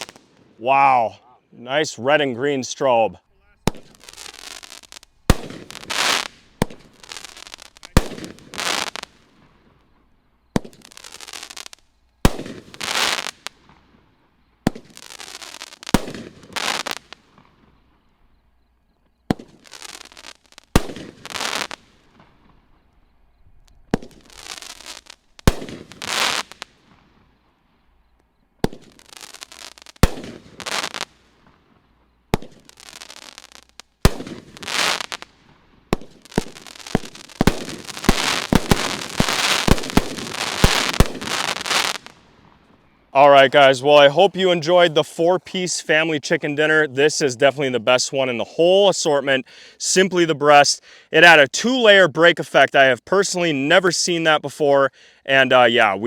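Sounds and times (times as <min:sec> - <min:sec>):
firework shots: 0:00.0 - 0:01.2, 0:02.1 - 0:18.0, 0:19.2 - 0:44.6
loud crackling hiss: 0:03.6 - 0:09.4, 0:10.6 - 0:13.6, 0:14.8 - 0:17.3, 0:19.5 - 0:22.1, 0:24.0 - 0:27.1, 0:28.8 - 0:31.7, 0:32.4 - 0:44.6.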